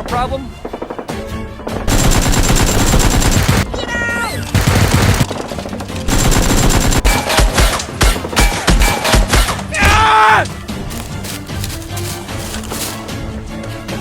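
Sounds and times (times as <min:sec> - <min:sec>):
automatic gunfire: 0:01.9 - 0:03.7, 0:06.1 - 0:07.7.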